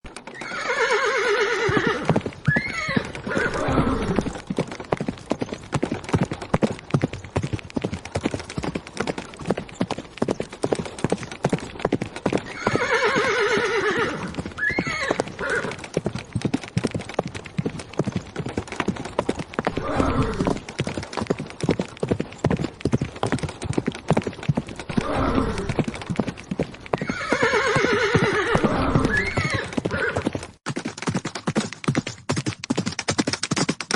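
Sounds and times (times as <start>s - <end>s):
horses hooves galloping: 0.0s - 33.9s
horse whinnying: 0.3s - 4.4s, 12.4s - 15.9s, 19.6s - 20.6s, 24.9s - 25.8s, 26.9s - 30.3s.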